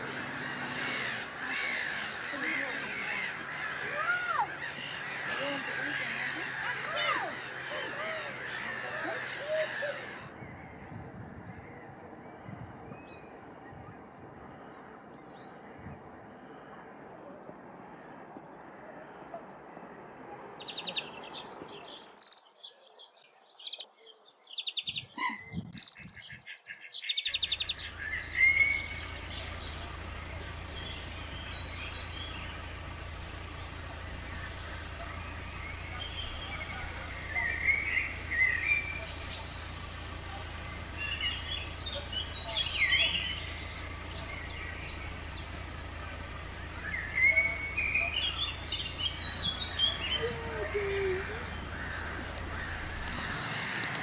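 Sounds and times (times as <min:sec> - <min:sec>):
birds rattling calls and chirps: 0:00.0 - 0:16.2, 0:20.6 - 0:22.5, 0:24.6 - 0:26.5, 0:27.1 - 0:54.0
birds warbling: 0:00.0 - 0:18.3, 0:20.4 - 0:22.8, 0:24.6 - 0:54.0
steady low rumble: 0:27.4 - 0:54.0.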